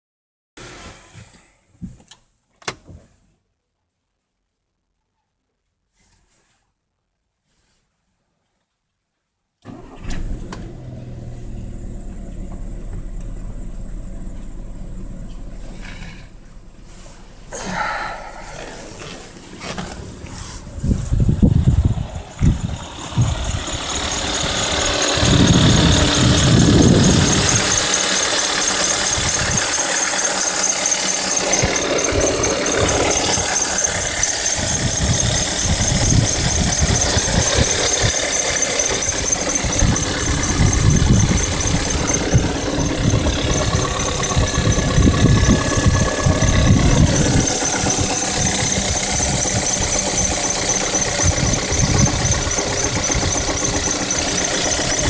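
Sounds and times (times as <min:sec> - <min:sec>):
car engine running: 0:09.7 - 0:55.0
high pulsing whistle: 0:12.0 - 0:55.0.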